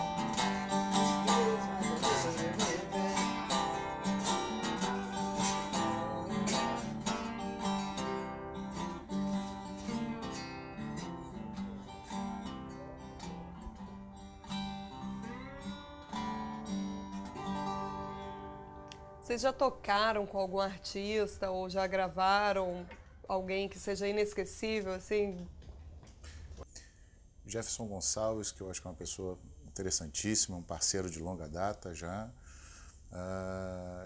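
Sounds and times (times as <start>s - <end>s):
blues guitars playing: 0.0s - 21.4s.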